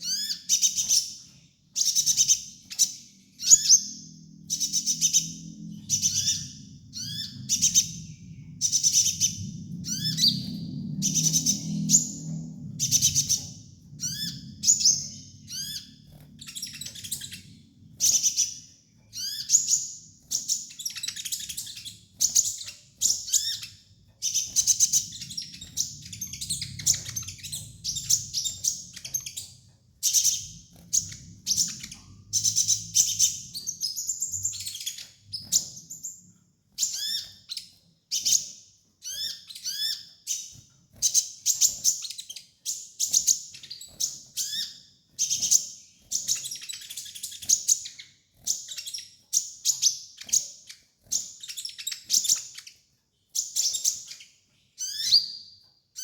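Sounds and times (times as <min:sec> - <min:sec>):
faint low hum: 0:00.0 - 0:37.9
bird twittering chirps: 0:00.0 - 0:56.0.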